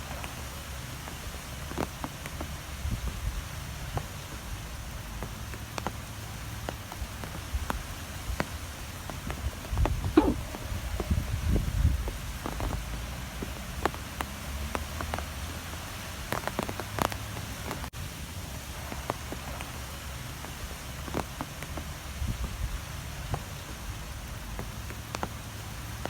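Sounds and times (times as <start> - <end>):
light ticks and taps: 0.1 - 11.2, 12.0 - 17.9, 20.4 - 26.0
strong wind blowing: 9.3 - 12.4.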